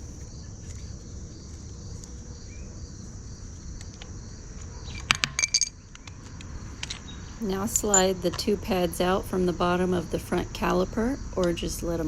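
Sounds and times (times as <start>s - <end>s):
insects chirring: 0.0s - 12.0s
metal tools clinking: 4.9s - 5.8s, 6.7s - 8.5s.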